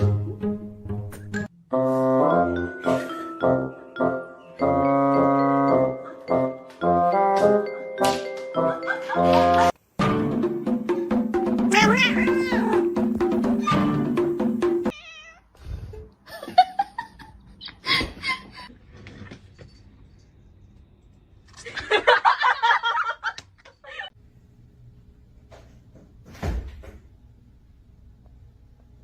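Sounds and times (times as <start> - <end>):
cat meowing: 11.7 - 12.9, 14.9 - 15.5.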